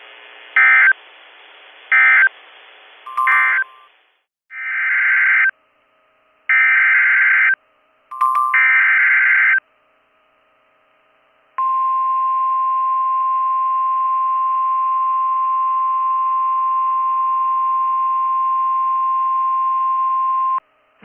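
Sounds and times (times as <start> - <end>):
steady alarm tone: 6.5 - 9.6.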